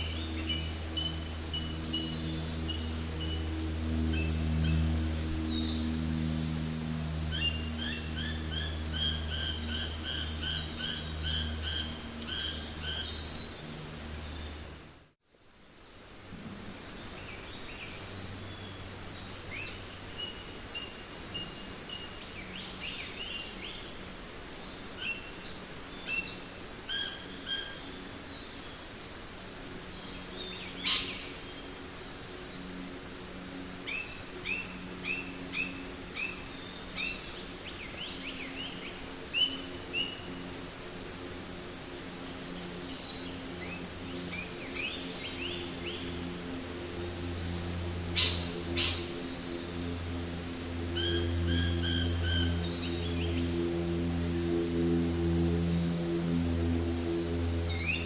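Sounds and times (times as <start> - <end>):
birds calling and chirping: 0.0 - 15.0, 29.7 - 58.0
low hum: 0.0 - 58.0
steady background hiss: 0.0 - 58.0.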